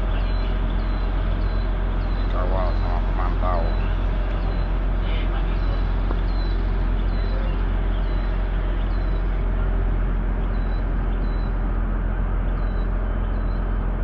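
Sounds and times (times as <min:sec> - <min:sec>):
boat diesel engine running: 0:00.0 - 0:14.0
faint high chirp: 0:05.5 - 0:09.4, 0:10.4 - 0:11.7, 0:12.6 - 0:13.8.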